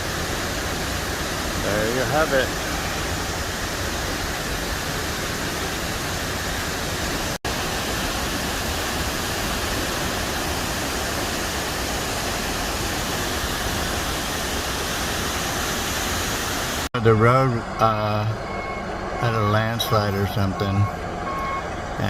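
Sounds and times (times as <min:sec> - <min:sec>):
waterfall rushing: 0:00.0 - 0:16.9.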